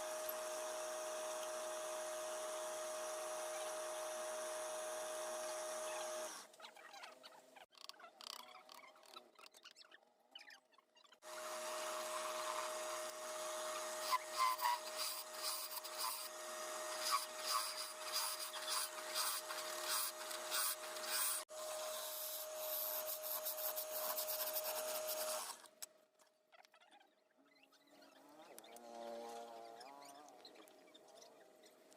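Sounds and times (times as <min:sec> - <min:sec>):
power tool sanding wood: 0:11.3 - 0:25.6.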